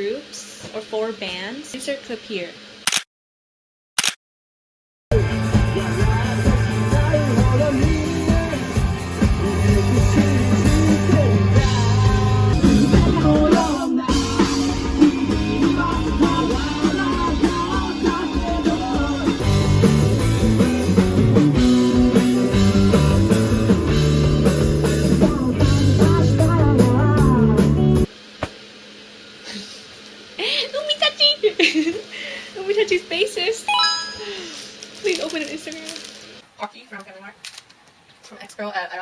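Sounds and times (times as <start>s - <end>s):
rock band with singer: 5.1s - 28.1s.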